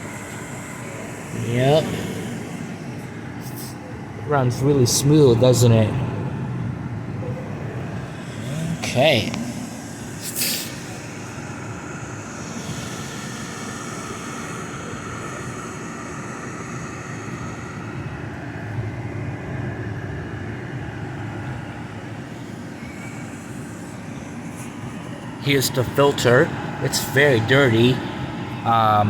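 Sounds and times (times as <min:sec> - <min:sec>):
compressor humming: 0:00.0 - 0:29.0
dehumidifier fan blowing: 0:00.0 - 0:29.0.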